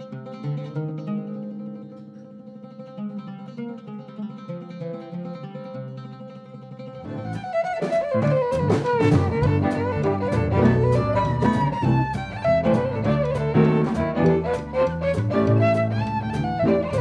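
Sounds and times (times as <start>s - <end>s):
violin melody: 7.0s - 17.0s.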